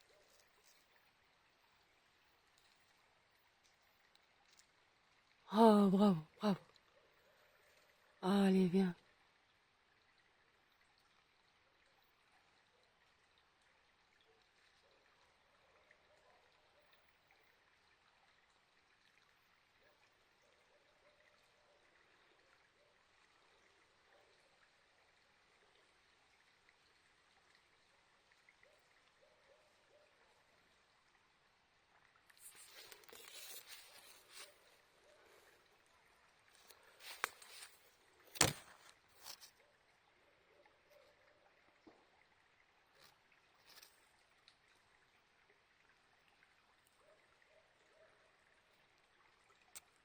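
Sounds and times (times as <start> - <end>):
faint hiss of flowing water: 0.0 - 50.0
rustling: 32.4 - 34.8, 36.6 - 39.5.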